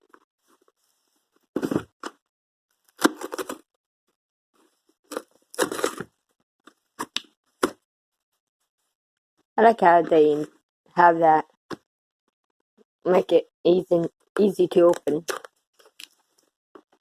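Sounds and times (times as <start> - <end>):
cardboard tearing and crackling: 2.9 - 3.6, 5.1 - 6.1.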